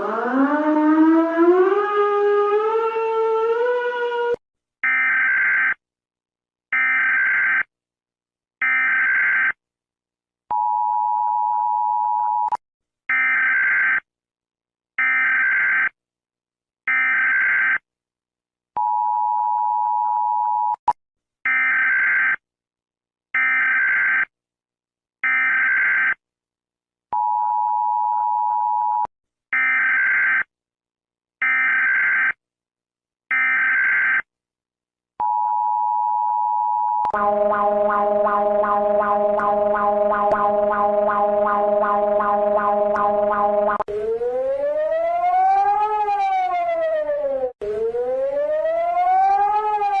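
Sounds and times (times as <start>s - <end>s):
long low alarm tone: 0.0s - 4.4s, 37.1s - 50.0s.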